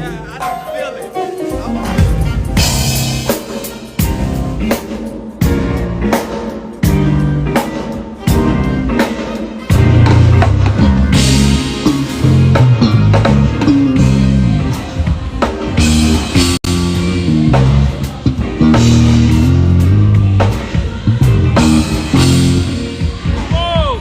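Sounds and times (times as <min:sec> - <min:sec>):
drum kit: 0:00.0 - 0:24.0
electric bass guitar: 0:01.5 - 0:03.4, 0:04.0 - 0:23.6.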